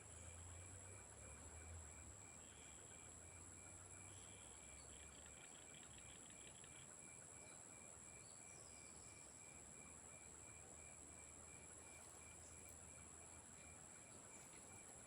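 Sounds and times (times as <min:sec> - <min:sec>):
rapid insect ticks: 0:00.1 - 0:07.9, 0:09.0 - 0:15.0
pulsing insect chirp: 0:00.1 - 0:15.0.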